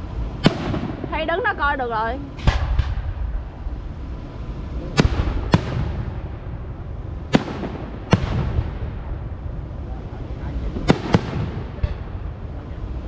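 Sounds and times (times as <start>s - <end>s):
fireworks bangs with echo: 0.0s - 1.7s, 2.3s - 3.7s, 4.9s - 9.6s, 10.3s - 12.5s.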